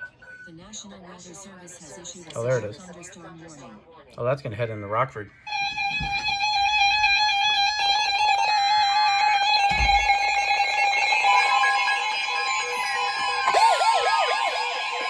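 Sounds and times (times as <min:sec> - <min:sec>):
weather radio alarm tone: 0:05.5 - 0:15.0.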